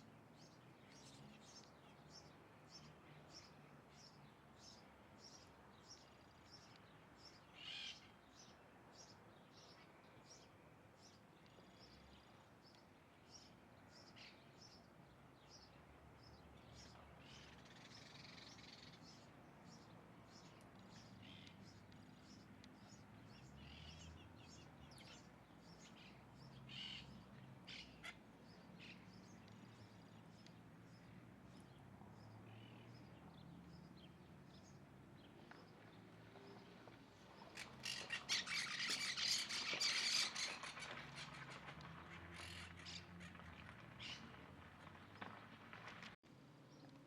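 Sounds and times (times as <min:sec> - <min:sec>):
wild birds calling: 0:16.8 - 0:31.6, 0:37.4 - 0:44.4.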